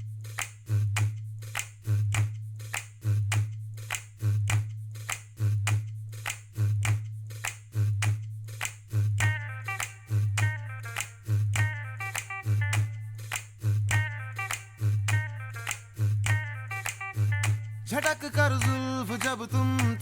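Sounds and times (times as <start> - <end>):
finger snaps: 0.3 - 20.0
low pulsing bass note: 8.9 - 20.0.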